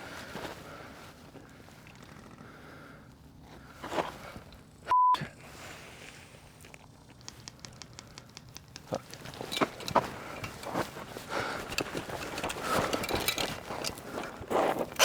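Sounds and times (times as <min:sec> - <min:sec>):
high censor bleep: 0:04.9 - 0:05.2.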